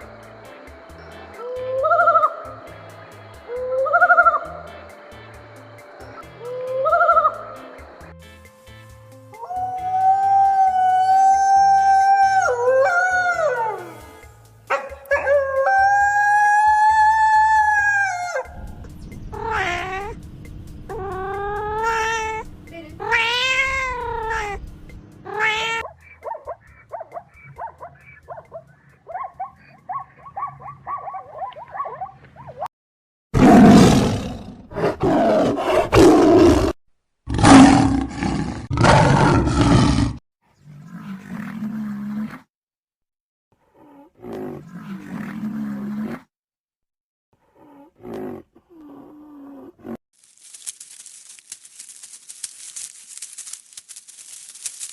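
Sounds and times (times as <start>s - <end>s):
large animal roaring: 33.4s - 40.2s.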